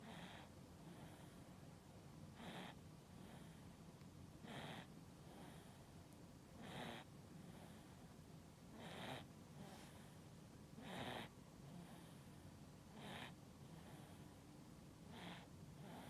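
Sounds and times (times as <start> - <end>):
baby snoring faintly: 0.0 - 1.5, 2.3 - 3.8, 4.4 - 6.0, 6.6 - 8.1, 8.7 - 10.2, 10.8 - 14.4, 15.0 - 16.0.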